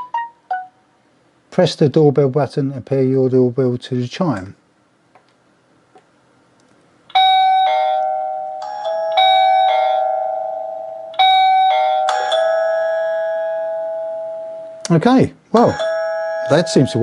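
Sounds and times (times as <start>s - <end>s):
doorbell ding-dong chime: 7.2s - 14.8s, 15.6s - 17.0s.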